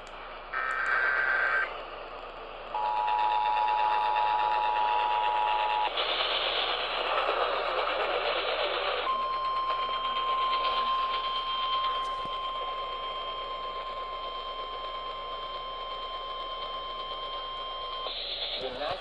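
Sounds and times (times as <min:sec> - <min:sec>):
radio static hiss: 0:00.1 - 0:09.1, 0:18.0 - 0:19.0.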